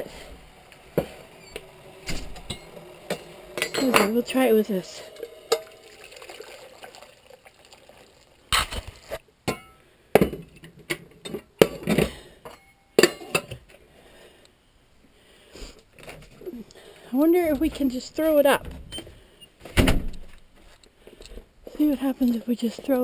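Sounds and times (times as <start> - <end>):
kettle clinks and knocks: 5.2 - 6.6.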